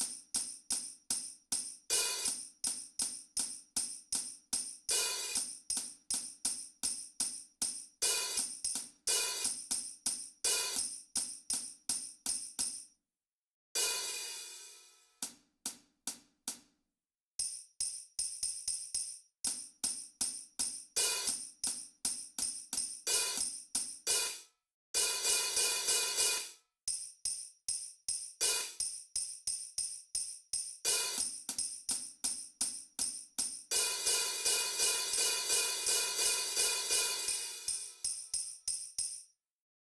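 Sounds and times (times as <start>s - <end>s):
hi-hat strikes: 0.0s - 12.9s, 17.4s - 24.4s, 25.0s - 39.3s
tambourine jingling: 17.4s - 21.8s, 26.9s - 39.4s.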